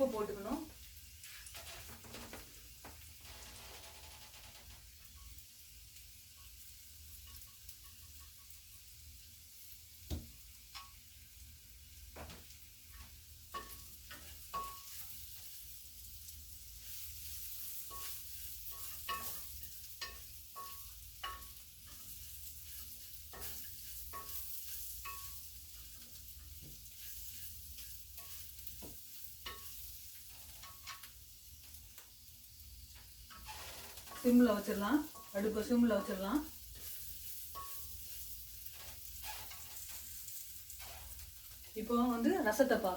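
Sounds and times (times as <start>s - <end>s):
beans sizzling in a pan: 0.0s - 42.9s
spatula scraping and knocking pan: 12.1s - 15.6s, 16.7s - 31.8s, 32.9s - 42.9s.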